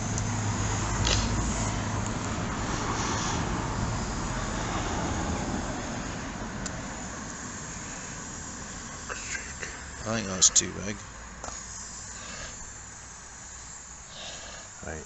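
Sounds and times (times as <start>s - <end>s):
road traffic rushing: 0.0s - 15.0s.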